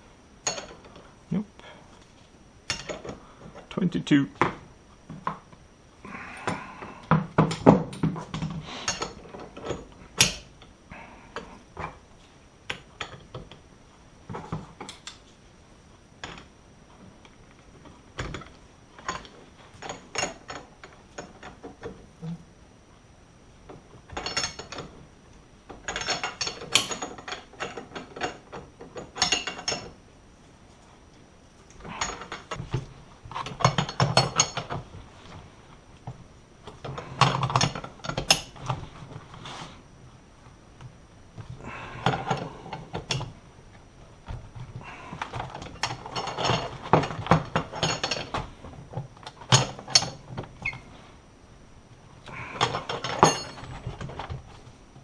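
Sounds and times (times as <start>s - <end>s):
metal parts clinking: 45.4s - 48.4s, 52.6s - 54.0s.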